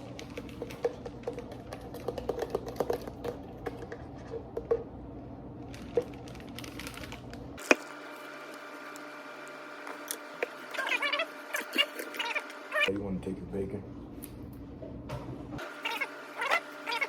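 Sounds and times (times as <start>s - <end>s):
utensils and food clicking: 0.0s - 4.8s.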